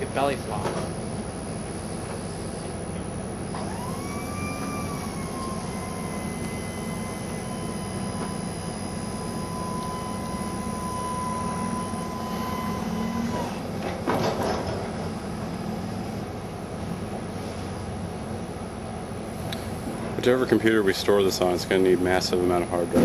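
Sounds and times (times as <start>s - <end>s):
mechanical rumble: 0.0s - 23.0s
motor whine: 0.0s - 23.0s.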